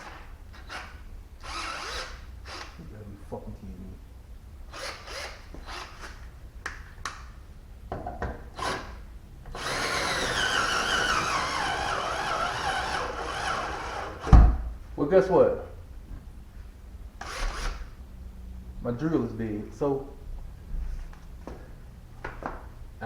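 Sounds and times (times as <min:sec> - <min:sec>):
cordless drill whining: 0:00.0 - 0:02.8, 0:04.7 - 0:06.2, 0:08.6 - 0:14.4, 0:17.2 - 0:17.9.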